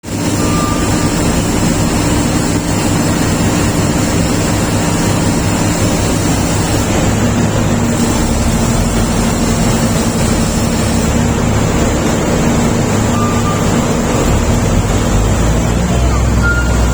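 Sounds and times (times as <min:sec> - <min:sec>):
bulldozer diesel engine running: 0:00.0 - 0:16.9.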